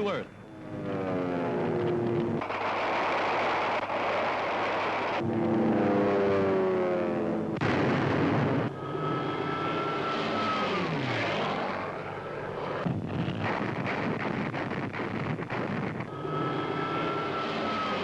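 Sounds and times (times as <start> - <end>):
propeller aircraft engines drone: 0.0 - 18.0
high whine dropping in pitch: 0.4 - 18.0
sharp irregular cracks: 1.6 - 5.2, 12.8 - 16.1.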